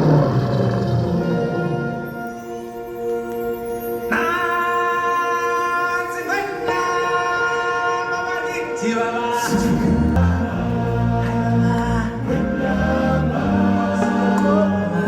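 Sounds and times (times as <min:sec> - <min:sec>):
singers chanting long notes: 0:06.3 - 0:15.0.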